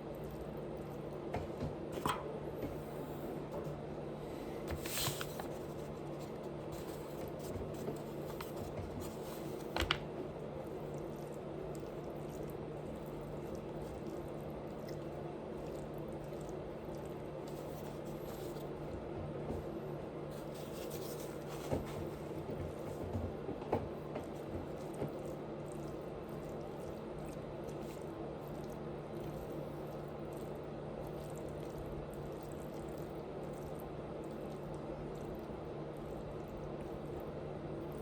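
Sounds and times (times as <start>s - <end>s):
person chewing food: 4.7s - 19.1s, 24.2s - 38.0s.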